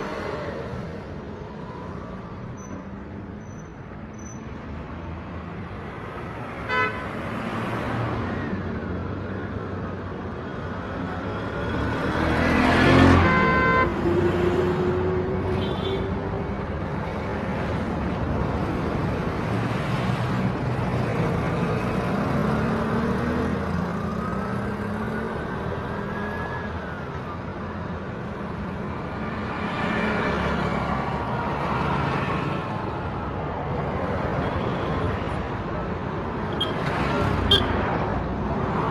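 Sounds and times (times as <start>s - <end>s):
vehicles passing: 0.0s - 38.9s
car horn: 6.7s - 7.1s, 13.2s - 13.9s, 36.5s - 36.9s, 37.5s - 37.8s.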